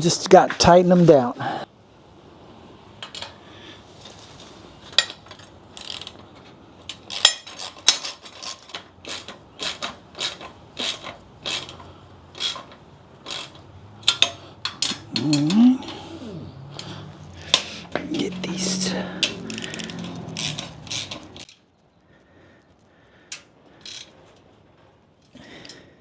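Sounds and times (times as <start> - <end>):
ratchet wrench clicking: 5.0 - 6.2, 6.9 - 21.5, 23.3 - 24.1.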